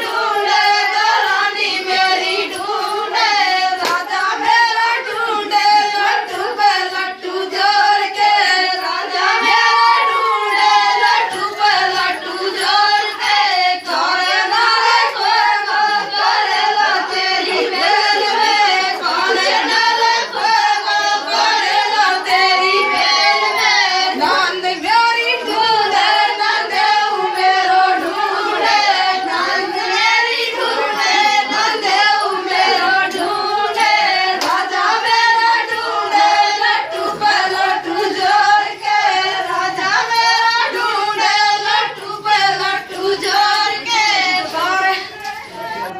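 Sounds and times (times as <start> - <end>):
person singing folk song: 0.0 - 45.9
hand clapping: 3.8 - 4.1, 33.8 - 34.6.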